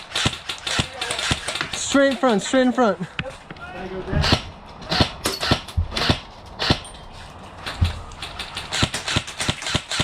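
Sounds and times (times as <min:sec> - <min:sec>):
airsoft gunshots: 0:00.0 - 0:02.4, 0:04.2 - 0:06.8, 0:08.2 - 0:10.0.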